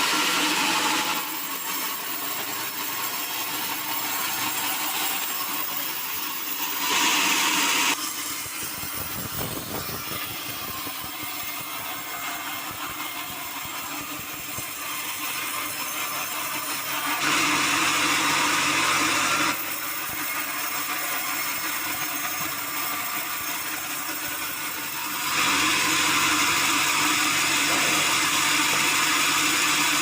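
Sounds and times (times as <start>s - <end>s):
saw cutting through timber: 0.0s - 30.0s.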